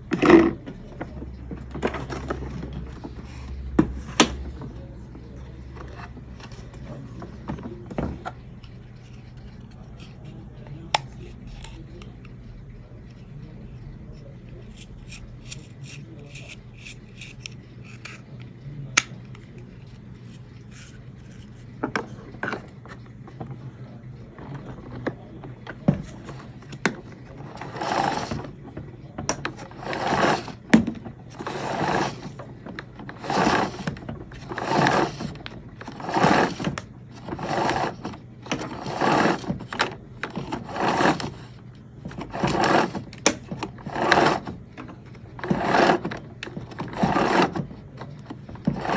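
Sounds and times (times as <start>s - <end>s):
low steady hum: 0.0s - 48.9s
rhythmic rubbing strokes: 13.1s - 18.3s, 19.7s - 21.6s.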